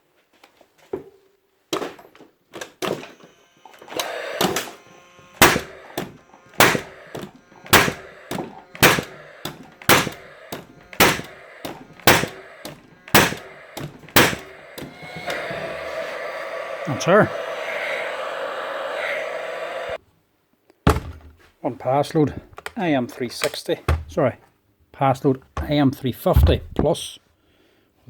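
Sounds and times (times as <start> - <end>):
nail gun firing: 5.4 - 14.9.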